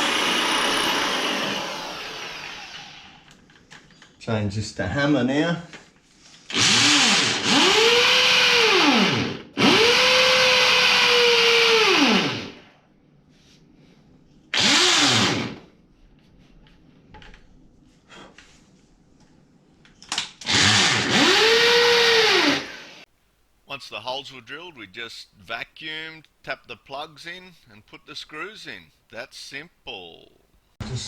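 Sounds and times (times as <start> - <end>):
hammer drill boring into concrete: 6.5 - 12.6, 14.6 - 15.6, 20.4 - 23.0.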